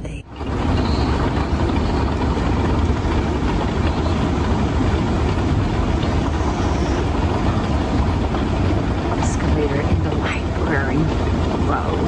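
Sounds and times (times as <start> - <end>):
escalator rumbling: 0.0 - 12.0.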